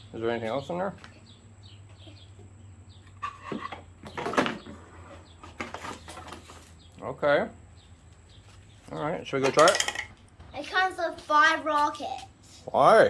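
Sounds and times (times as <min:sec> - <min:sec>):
faint bird chirps: 0:00.5 - 0:07.1.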